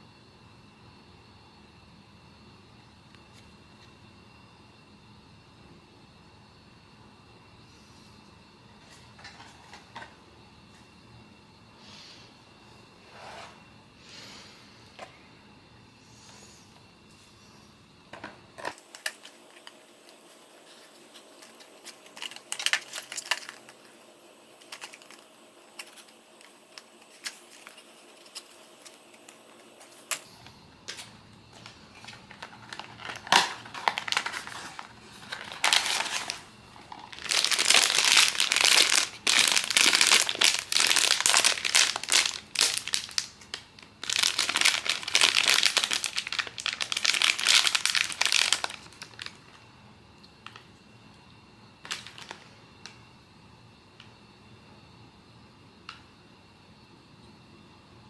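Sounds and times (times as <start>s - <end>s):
wrapping crinkling: 18.7s - 49.6s, 51.8s - 53.0s.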